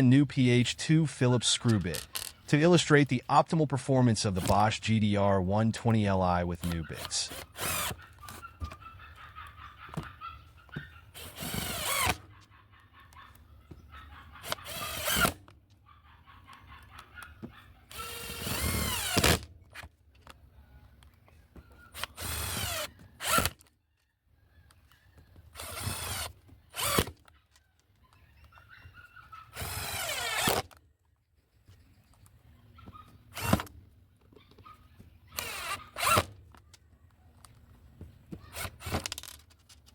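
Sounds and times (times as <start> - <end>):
impact driver driving screws: 4.4 - 4.6, 6.6 - 8.8, 11.1 - 12.3, 14.4 - 15.5, 17.9 - 19.9, 21.9 - 23.7, 25.5 - 27.3, 29.5 - 30.8, 33.3 - 33.7, 35.4 - 36.4, 38.5 - 39.8.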